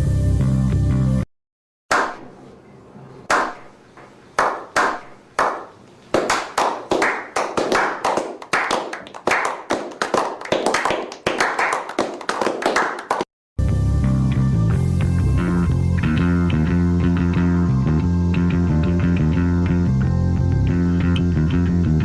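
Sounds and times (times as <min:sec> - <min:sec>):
hand clapping: 0:01.9 - 0:02.3, 0:03.3 - 0:03.7, 0:04.4 - 0:13.3.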